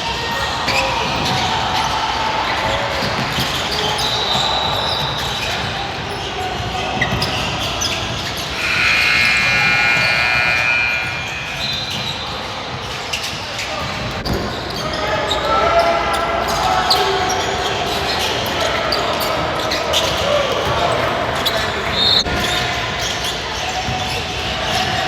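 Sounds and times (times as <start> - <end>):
long steady tone: 8.5 - 12.2
crowd noise: 8.5 - 12.6.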